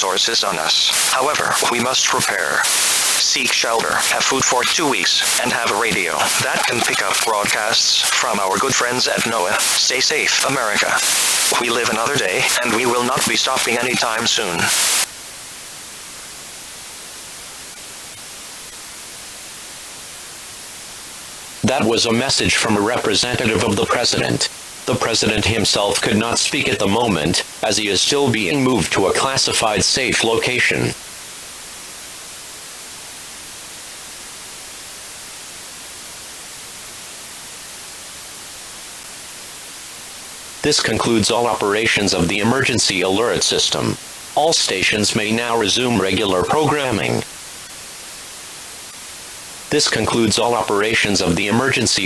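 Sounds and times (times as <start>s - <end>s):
static hiss: 0.0s - 52.0s.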